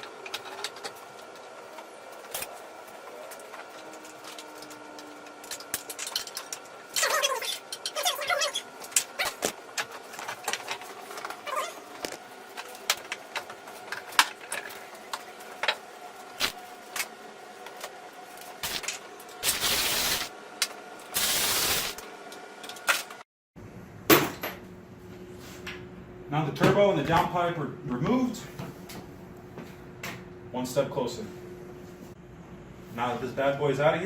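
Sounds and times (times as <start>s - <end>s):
short bursts of noise: 19.4s - 20.3s.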